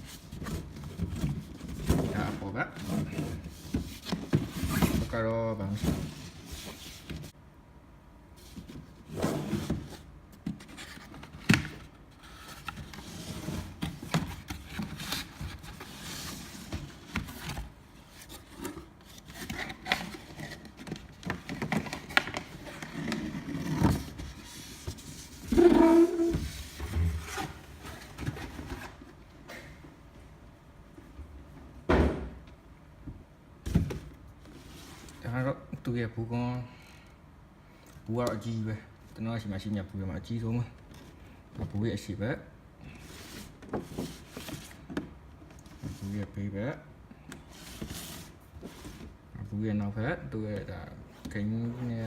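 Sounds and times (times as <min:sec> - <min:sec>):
cardboard box scraping and rubbing: 0:22.8 - 0:28.0.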